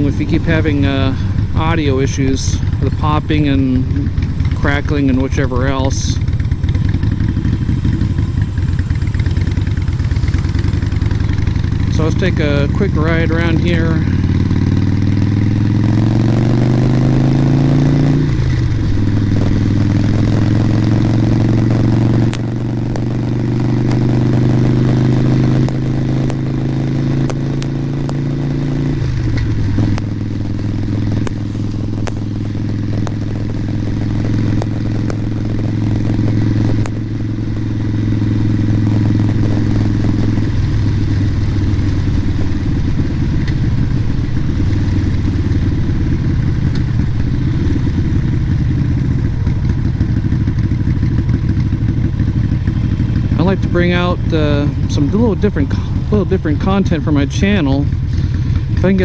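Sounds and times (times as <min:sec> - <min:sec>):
motorcycle engine revving: 0:00.0 - 0:59.0
sharp engine pops: 0:13.1 - 0:43.9.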